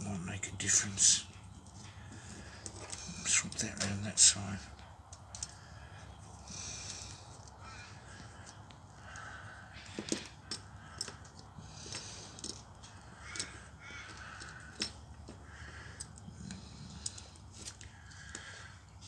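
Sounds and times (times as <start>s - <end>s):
crows cawing: 1.8s - 3.4s, 5.3s - 19.0s
small metal parts clicking: 5.0s - 6.1s, 6.7s - 18.7s.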